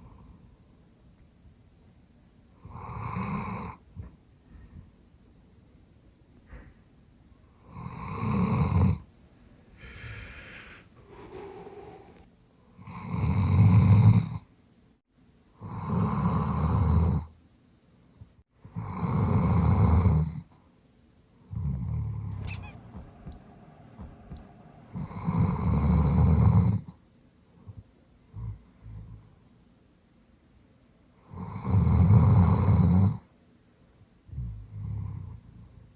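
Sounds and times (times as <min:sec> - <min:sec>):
dog snoring loudly: 0:02.6 - 0:03.9, 0:07.7 - 0:09.0, 0:12.8 - 0:14.4, 0:15.6 - 0:17.3, 0:18.8 - 0:20.5, 0:21.5 - 0:22.5, 0:24.3 - 0:26.9, 0:31.3 - 0:33.2, 0:34.3 - 0:35.8
dog breathing softly: 0:09.8 - 0:12.3.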